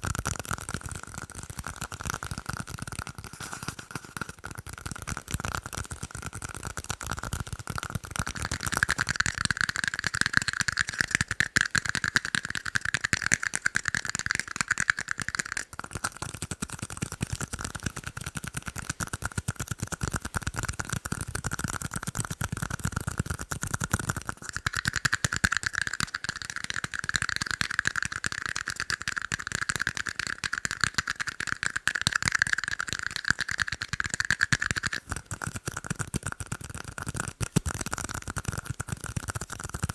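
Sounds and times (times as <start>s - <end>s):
fast tapping on ringing cups: 24.5s - 35.0s.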